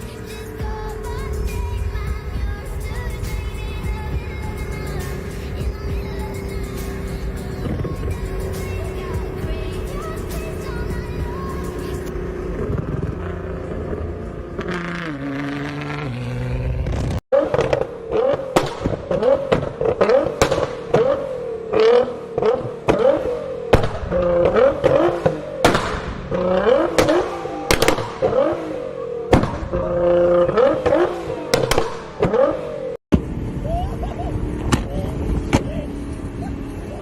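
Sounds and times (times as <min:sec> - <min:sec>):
car engine revving: 0:00.0 - 0:37.0
exhaust pops and bangs: 0:12.6 - 0:13.2, 0:16.8 - 0:28.7, 0:29.3 - 0:33.2.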